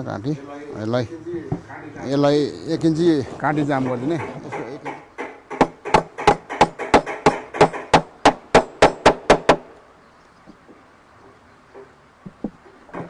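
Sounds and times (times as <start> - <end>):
hammer driving nails into wood: 4.2 - 9.7.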